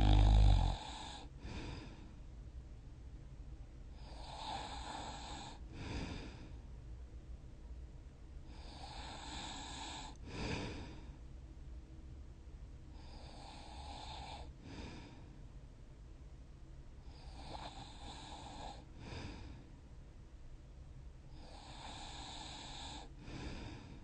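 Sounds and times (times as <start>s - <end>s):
person snoring: 0.0s - 1.8s.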